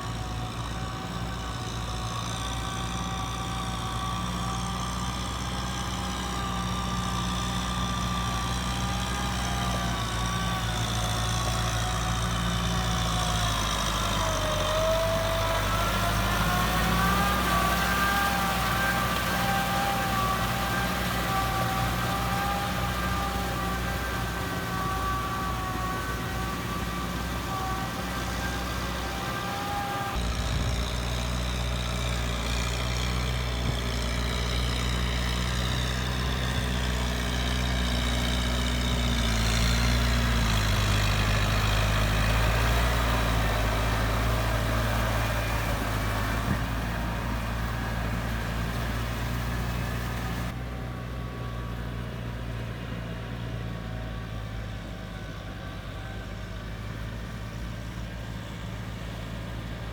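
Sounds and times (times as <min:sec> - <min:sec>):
tractor engine running: 0:00.0 - 0:59.9.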